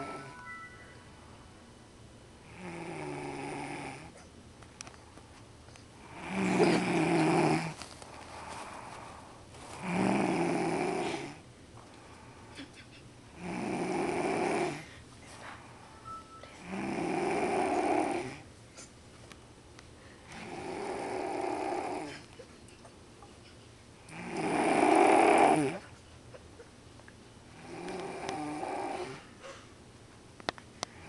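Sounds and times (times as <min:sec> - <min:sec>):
person snoring: 0:02.5 - 0:04.1, 0:06.0 - 0:07.8, 0:09.8 - 0:11.4, 0:13.4 - 0:14.9, 0:16.6 - 0:18.4, 0:20.4 - 0:22.2, 0:24.1 - 0:25.8, 0:27.6 - 0:29.2.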